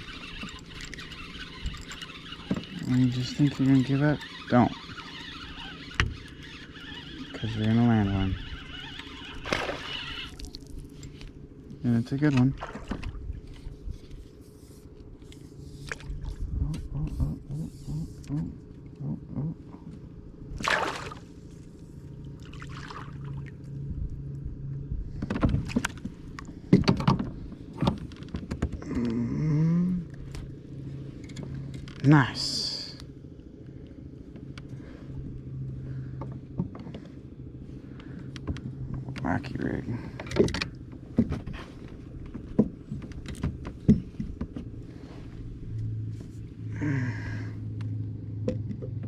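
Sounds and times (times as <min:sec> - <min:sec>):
steady low hum: 0:00.0 - 0:49.0
water splashing: 0:20.6 - 0:21.3, 0:22.4 - 0:23.6
knocks and thumps against boat: 0:25.0 - 0:28.8, 0:40.2 - 0:44.8.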